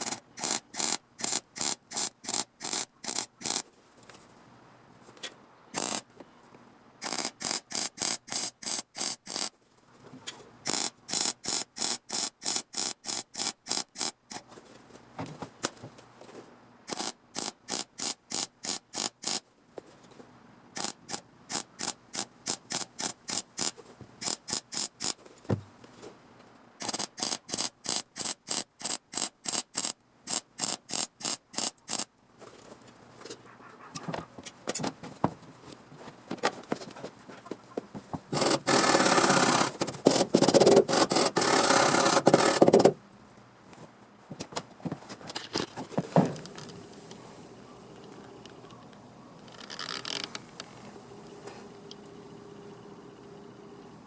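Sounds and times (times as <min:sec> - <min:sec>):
welder crackling pulses: 0:00.0 - 0:03.6, 0:05.8 - 0:06.1, 0:07.0 - 0:09.5, 0:10.6 - 0:14.5, 0:16.9 - 0:19.4, 0:20.8 - 0:25.2, 0:26.8 - 0:32.1.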